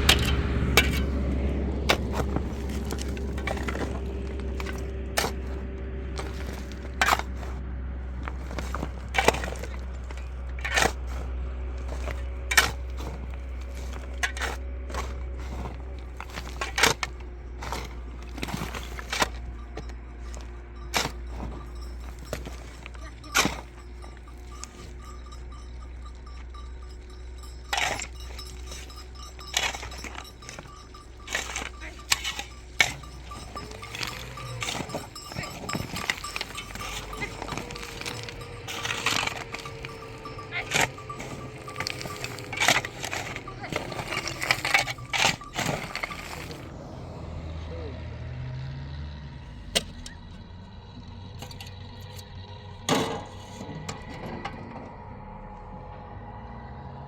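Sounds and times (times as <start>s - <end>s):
steady low rumble: 0.0s - 47.9s
sharp knocks and clinks: 8.2s - 46.7s.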